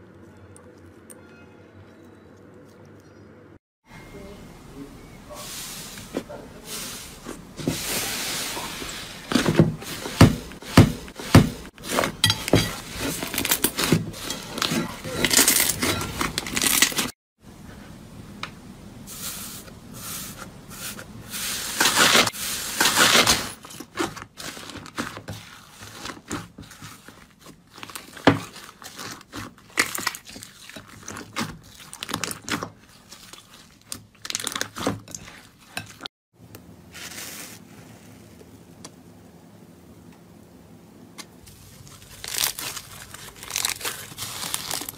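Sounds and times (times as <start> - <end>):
slime crackling and popping: 41.9 - 44.9.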